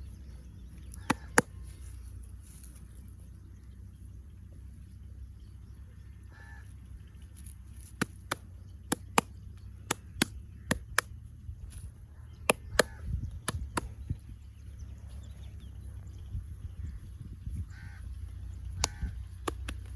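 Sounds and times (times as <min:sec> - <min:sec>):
hands clicking in massage: 0:00.9 - 0:01.7, 0:07.8 - 0:11.2, 0:12.4 - 0:14.1, 0:18.8 - 0:19.9
low rumble: 0:08.4 - 0:19.9.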